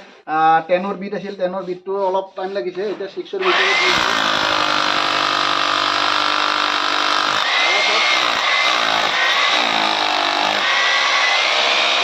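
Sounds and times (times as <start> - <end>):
rotary hammer drilling: 3.4 - 12.0.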